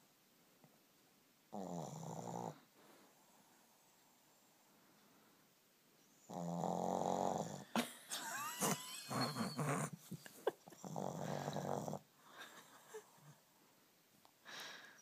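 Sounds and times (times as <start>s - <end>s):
dog snoring and snorting: 1.5s - 2.7s, 6.3s - 7.7s, 9.0s - 9.9s, 10.8s - 12.1s.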